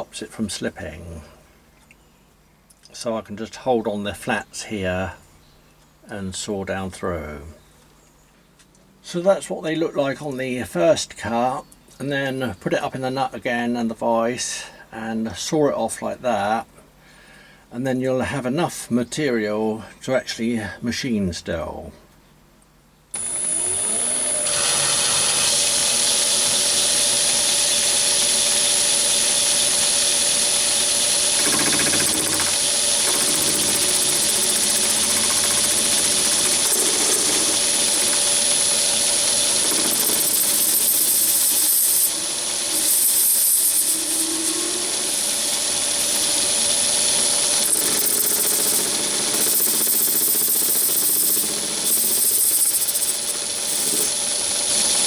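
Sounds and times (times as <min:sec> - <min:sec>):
lathe motor whine: 0:23.2 - 0:55.0.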